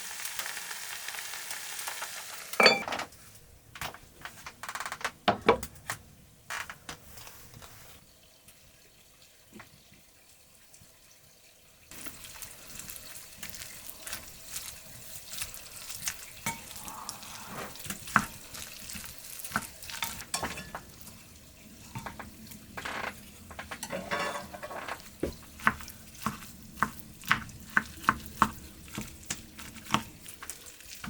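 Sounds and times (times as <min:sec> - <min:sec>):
food sizzling in a pan: 0:00.0 - 0:02.8, 0:07.8 - 0:31.0
utensils knocking and clinking: 0:02.6 - 0:03.1, 0:22.0 - 0:25.0.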